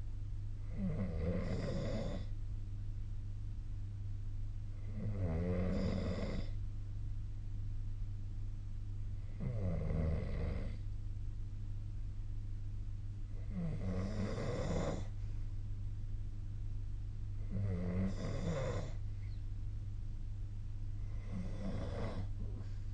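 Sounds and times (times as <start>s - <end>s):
person snoring: 0.6s - 2.3s, 4.8s - 6.6s, 9.2s - 10.8s, 13.4s - 15.1s, 17.4s - 19.0s, 21.0s - 22.4s.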